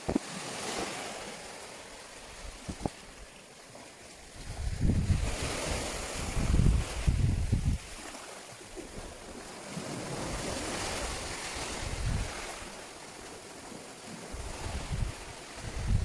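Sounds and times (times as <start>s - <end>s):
ocean waves washing ashore: 0.0s - 16.0s
wind buffeting microphone: 4.3s - 8.0s, 10.0s - 12.8s, 14.3s - 16.0s.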